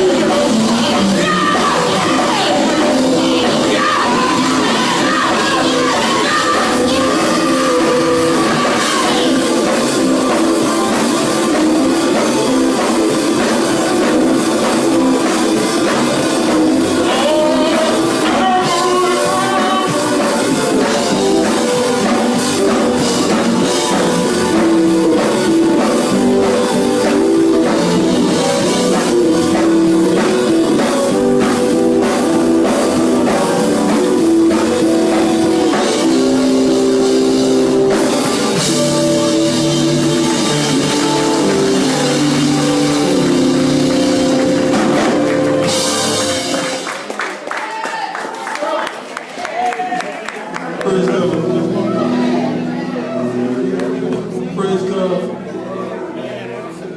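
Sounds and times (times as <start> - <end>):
faint singing: 0.0 - 12.2
drum kit: 0.0 - 47.4
guitar: 0.0 - 47.4, 50.6 - 56.9
gospel band playing: 0.0 - 56.9.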